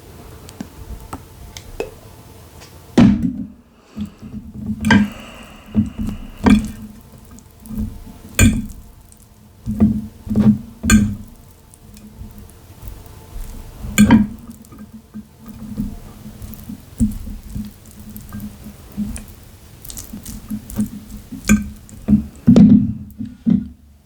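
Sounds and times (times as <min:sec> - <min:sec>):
slurping and smacking noodles: 0:03.8 - 0:08.0.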